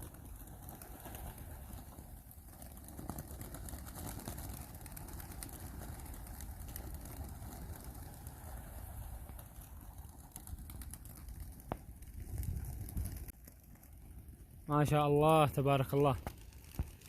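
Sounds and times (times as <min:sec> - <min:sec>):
pigeons flapping wings: 0:00.0 - 0:14.7, 0:15.3 - 0:17.0
wind rumble on microphone: 0:06.2 - 0:13.3.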